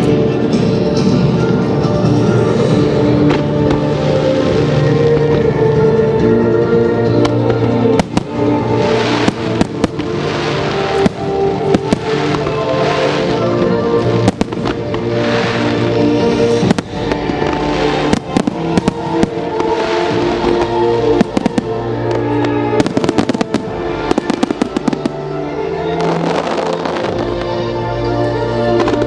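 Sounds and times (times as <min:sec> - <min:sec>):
fireworks bangs and crackles: 0:00.0 - 0:27.7, 0:28.8 - 0:29.0
music playing: 0:00.0 - 0:29.0.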